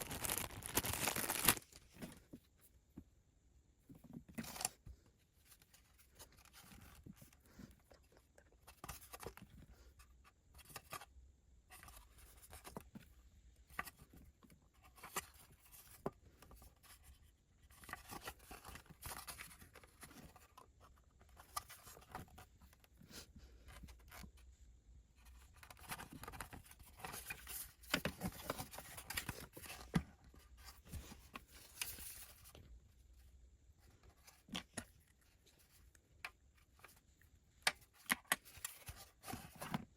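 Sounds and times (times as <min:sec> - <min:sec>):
packaging rustling and tearing: 0:00.0 - 0:01.9.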